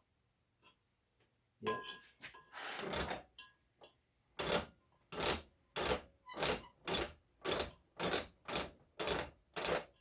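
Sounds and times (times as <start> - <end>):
vise screw rasping: 4.4 - 10.0.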